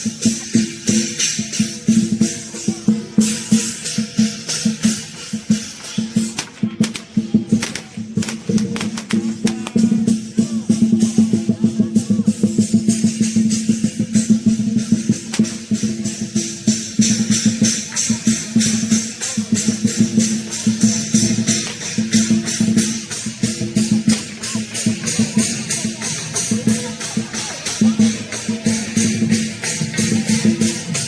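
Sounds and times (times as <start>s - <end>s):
cymbals clashing: 0.0s - 11.3s, 12.4s - 31.0s
drum beating fast: 0.0s - 31.0s.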